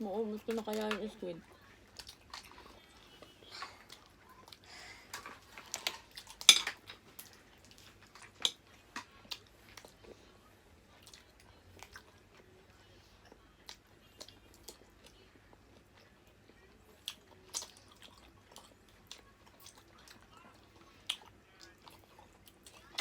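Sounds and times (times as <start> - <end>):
cutlery and dishes clinking: 5.2 - 7.0
chewing and biting: 13.2 - 23.0.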